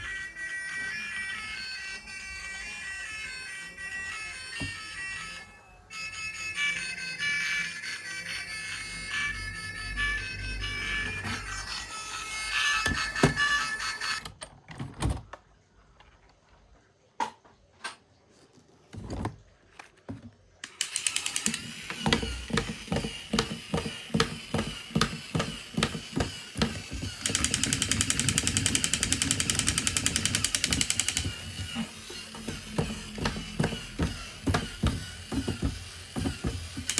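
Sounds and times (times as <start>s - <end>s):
plastic toy gears clicking: 20.6s - 36.9s.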